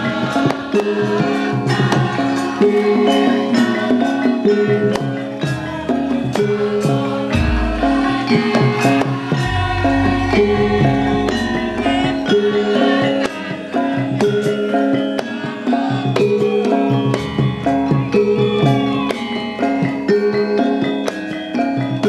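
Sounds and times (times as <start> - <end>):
metallophone melody: 2.6 - 15.2
hand drum strokes: 7.3 - 13.5.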